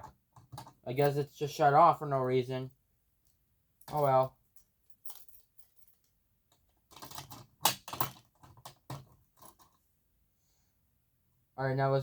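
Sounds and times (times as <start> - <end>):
handling clicks and knocks: 0.0 - 0.9, 3.8 - 4.2, 6.5 - 9.8.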